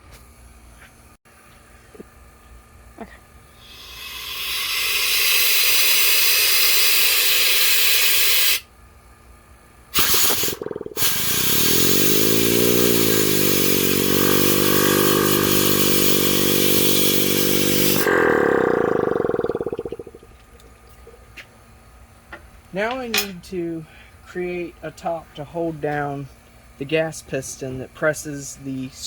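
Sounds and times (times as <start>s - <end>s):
compressor humming tone: 0.0s - 29.0s
compressed gas hissing: 3.6s - 8.6s, 10.0s - 20.3s.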